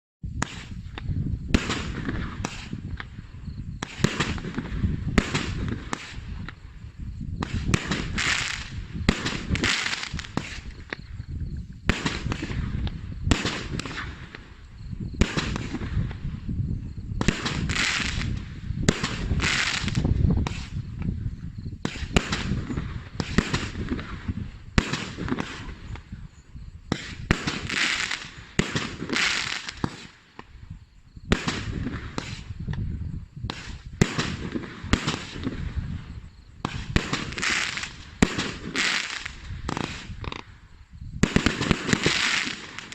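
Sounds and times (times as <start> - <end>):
fireworks bangs: 0.3 - 6.7, 7.4 - 11.1, 11.8 - 16.6, 17.2 - 21.2, 21.8 - 26.2, 26.8 - 30.6, 31.3 - 40.5, 41.1 - 42.9
fireworks hissing: 7.5 - 10.8, 17.2 - 20.9, 26.9 - 30.5, 36.6 - 40.5, 41.2 - 42.9.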